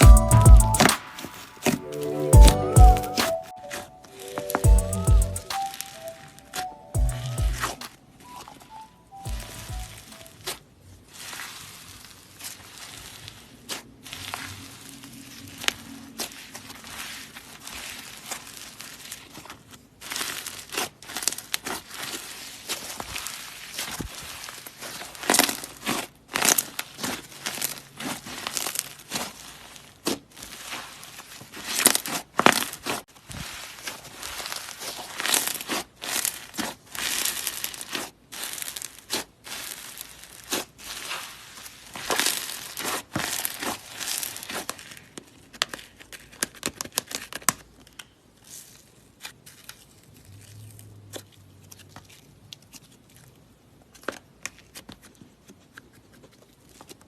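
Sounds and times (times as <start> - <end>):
slime crackling and popping: 31.6 - 53.3.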